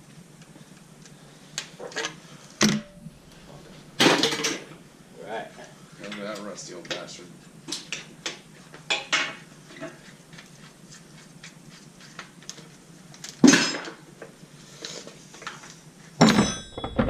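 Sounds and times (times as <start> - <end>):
metal tools clinking: 16.2 - 17.0.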